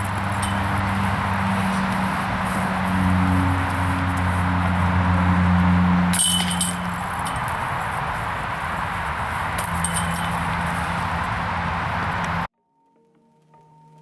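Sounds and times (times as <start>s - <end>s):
chains jangling: 0.0s - 12.5s.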